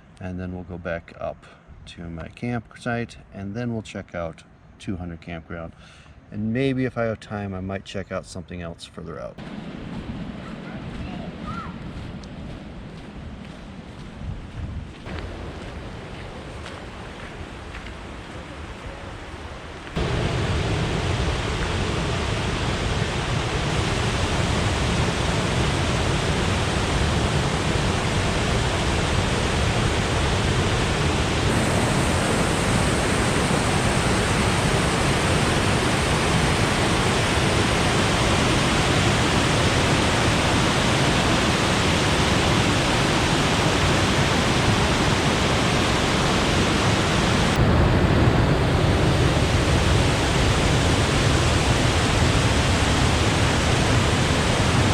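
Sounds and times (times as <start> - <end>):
waterfall rushing: 15.1 - 54.9.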